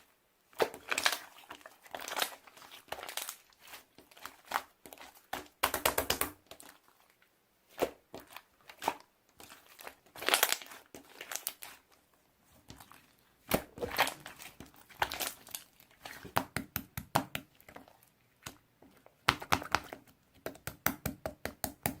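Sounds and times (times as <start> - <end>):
plastic crinkling: 0.6 - 5.5, 8.2 - 12.0, 12.7 - 16.4.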